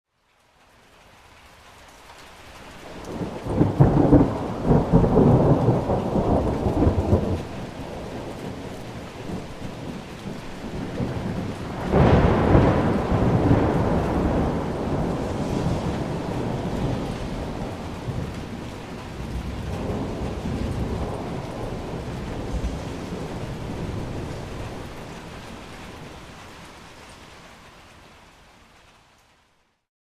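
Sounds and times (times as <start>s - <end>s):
steady rain: 0.0s - 29.9s
thunder rolling: 3.0s - 26.7s.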